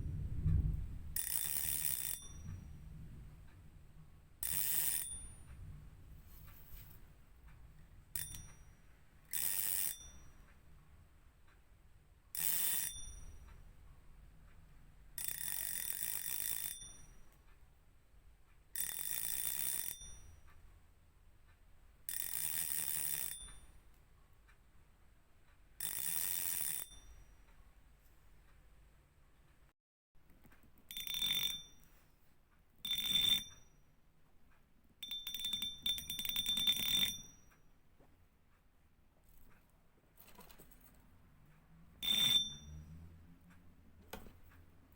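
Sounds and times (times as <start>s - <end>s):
fishing reel drag clicking: 1.2s - 2.2s, 4.4s - 5.1s.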